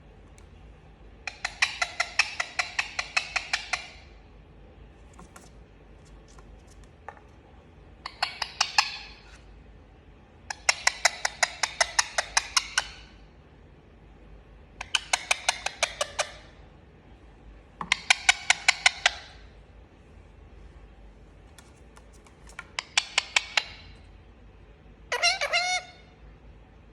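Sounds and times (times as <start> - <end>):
parrot clicking chatter: 1.2 - 4.1, 8.0 - 9.2, 10.5 - 13.1, 17.8 - 19.4, 21.6 - 24.0.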